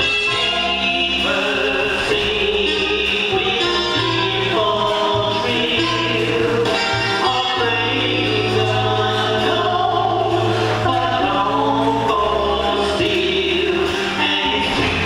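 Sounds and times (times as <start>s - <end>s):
choir singing in harmony: 0.0s - 15.0s.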